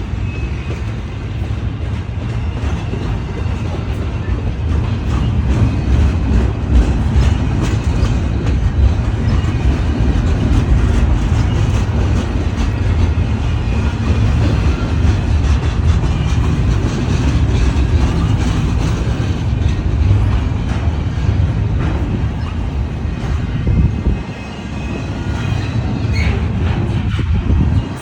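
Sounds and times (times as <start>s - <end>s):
train wheels rumbling on rails: 0.0s - 28.0s.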